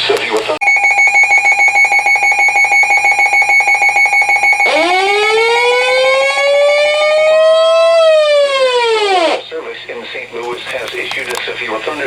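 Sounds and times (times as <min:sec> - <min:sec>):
pulsing electronic alarm tone: 0:00.6 - 0:09.4
siren winding up: 0:00.6 - 0:09.4.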